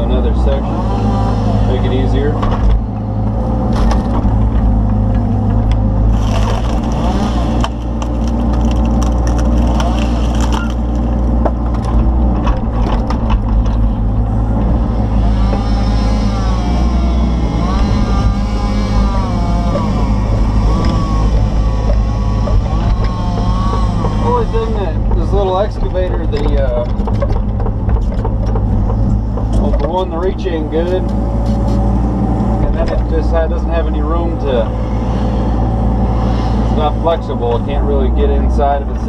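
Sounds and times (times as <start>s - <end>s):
excavator diesel engine running: 0.0s - 39.0s
wood cracking and splitting: 2.4s - 31.8s.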